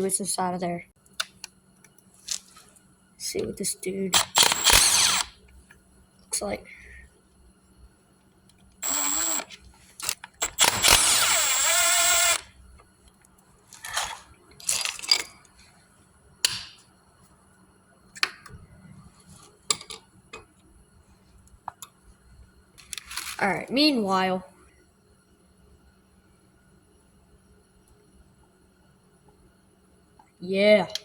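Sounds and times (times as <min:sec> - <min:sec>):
power tool running: 0:04.2 - 0:05.3, 0:08.8 - 0:12.5
metal parts scraping and clinking: 0:04.3 - 0:05.3, 0:13.8 - 0:15.4.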